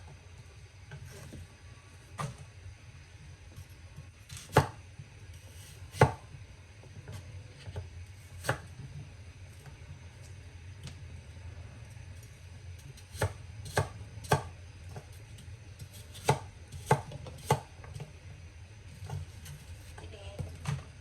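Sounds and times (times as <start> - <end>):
knife chopping on cutting board: 4.3 - 4.8, 5.4 - 6.3, 8.4 - 8.8, 13.0 - 15.2, 15.8 - 18.0.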